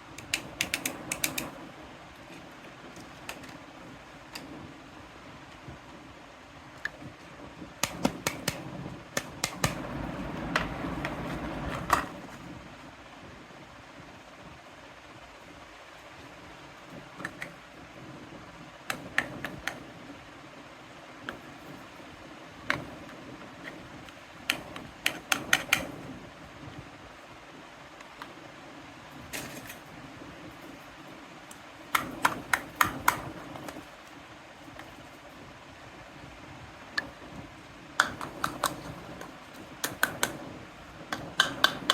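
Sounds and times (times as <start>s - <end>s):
faint steady hum: 0.0s - 41.9s
toy pieces clicking and tapping: 38.0s - 40.4s, 41.1s - 41.9s.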